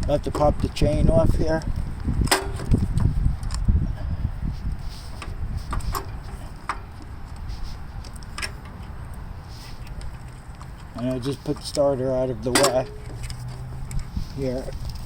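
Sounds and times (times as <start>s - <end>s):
rustling handling noise: 4.4s - 15.0s.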